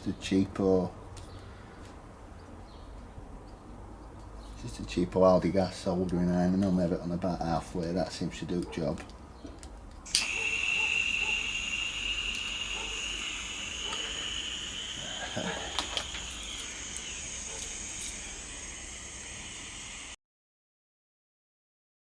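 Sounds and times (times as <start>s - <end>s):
burning gas hissing: 10.1s - 20.2s
soldering iron lighting click: 10.1s - 20.2s.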